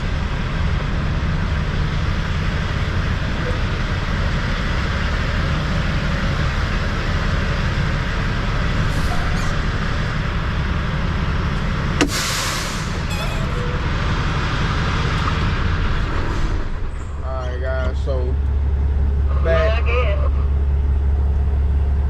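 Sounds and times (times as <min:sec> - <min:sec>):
diesel truck engine rumbling: 0:00.0 - 0:22.0
short air hiss: 0:12.0 - 0:13.0.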